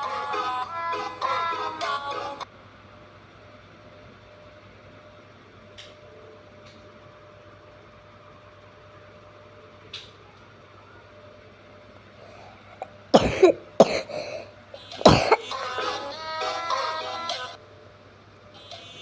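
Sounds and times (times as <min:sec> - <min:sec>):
faint room hum: 0:08.2 - 0:19.0
person coughing: 0:12.3 - 0:15.5.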